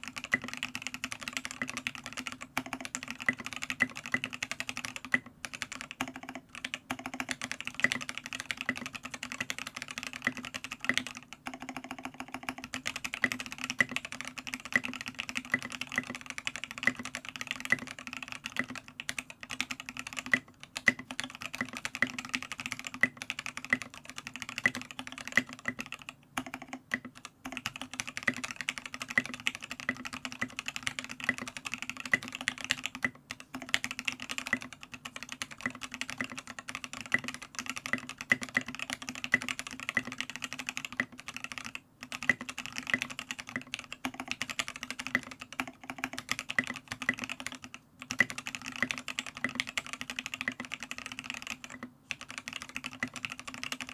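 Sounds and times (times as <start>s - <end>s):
fast keyboard typing clacks: 0.0s - 53.9s.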